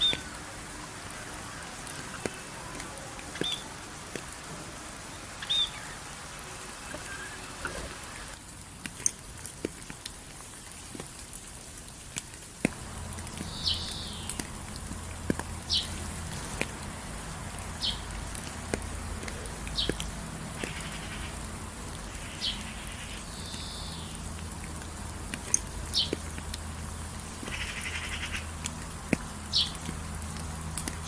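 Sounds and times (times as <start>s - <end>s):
birds whistling: 0.0s - 0.3s, 3.4s - 3.7s, 5.4s - 8.2s, 12.8s - 14.8s, 15.6s - 16.6s, 17.7s - 18.2s, 22.1s - 24.2s, 25.9s - 26.2s, 29.5s - 29.9s
steady rain: 0.0s - 31.0s
water drips ticking: 0.0s - 31.0s
buzzy bird calls: 5.2s - 8.4s, 12.8s - 18.2s, 18.9s - 24.3s, 26.9s - 28.6s.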